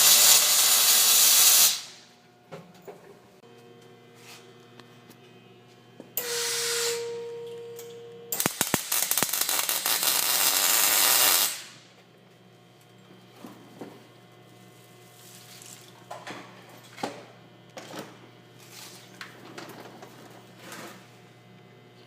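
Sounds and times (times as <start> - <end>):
welding crackling hiss: 0.0 - 2.0, 6.2 - 7.0, 8.3 - 11.8.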